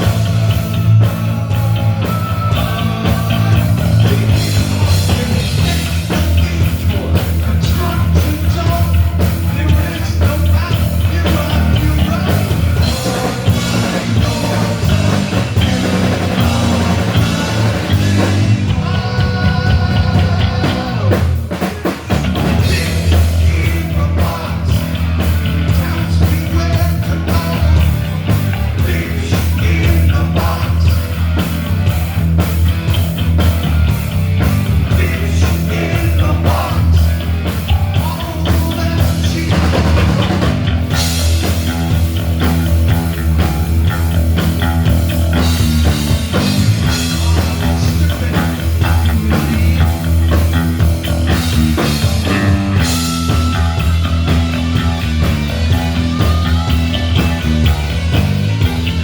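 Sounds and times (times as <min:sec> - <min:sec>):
person singing: 0:00.0 - 0:31.1, 0:34.9 - 0:40.5, 0:46.3 - 0:50.5
drums: 0:00.0 - 0:59.0
guitar: 0:00.0 - 0:59.0.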